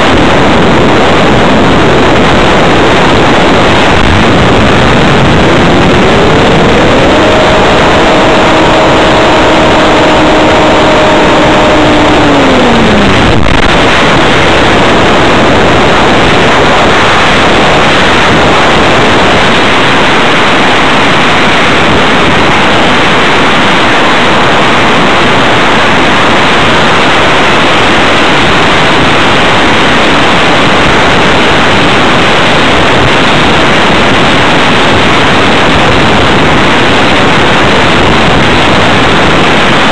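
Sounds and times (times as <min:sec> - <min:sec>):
wind rush over microphone: 0:00.0 - 0:39.9
electric motor whining: 0:03.4 - 0:17.8.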